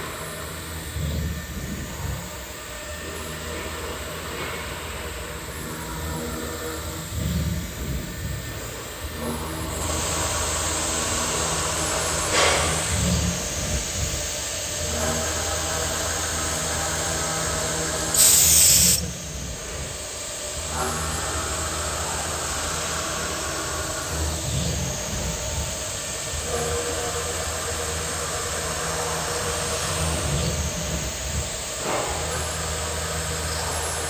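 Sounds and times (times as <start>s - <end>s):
router spindle whine: 0.0s - 34.0s
drilling aluminium: 18.1s - 19.1s
air hiss: 18.2s - 19.1s.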